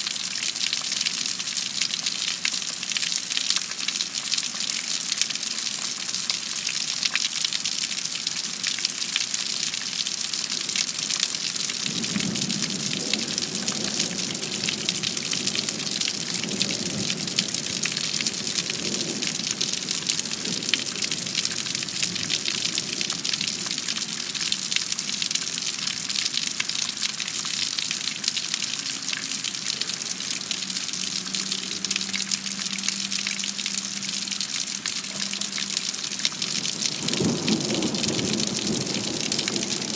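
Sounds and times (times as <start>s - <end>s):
heavy rain falling: 0.0s - 39.9s
faint low thunder rumble: 11.0s - 25.8s, 36.3s - 39.9s.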